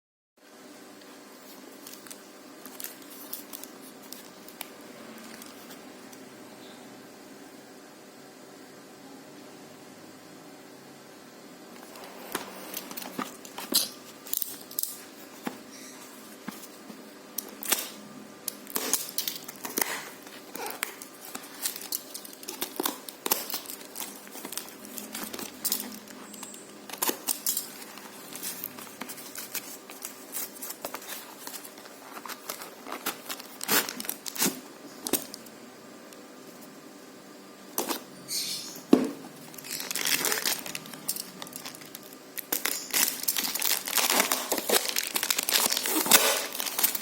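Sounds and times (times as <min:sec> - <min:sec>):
plastic wrapping crinkling and tearing: 0:01.8 - 0:05.8, 0:11.8 - 0:15.6, 0:17.4 - 0:35.4, 0:39.4 - 0:47.0.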